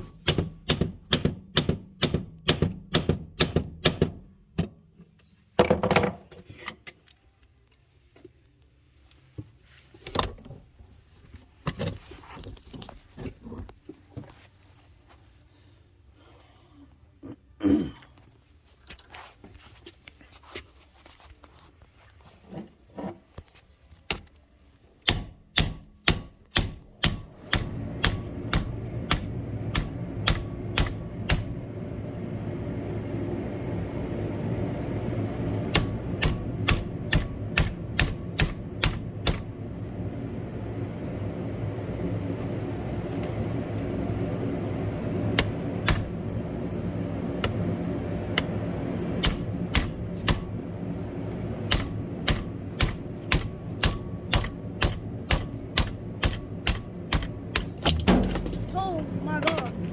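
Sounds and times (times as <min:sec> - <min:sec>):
hammering on metal: 0:00.2 - 0:04.7, 0:25.0 - 0:31.5, 0:51.7 - 0:58.5
low machine hum: 0:24.7 - 0:59.9
metal clanks and knocks: 0:51.7 - 0:59.9.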